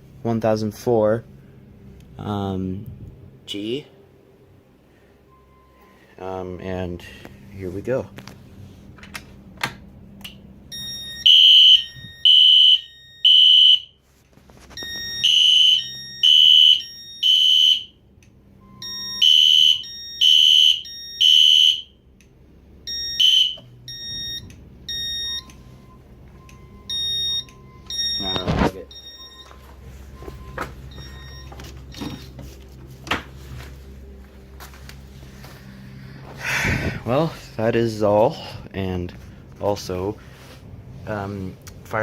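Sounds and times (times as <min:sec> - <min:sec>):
fire alarm horns blasting: 0:10.7 - 0:14.1, 0:14.7 - 0:22.1, 0:22.8 - 0:31.6.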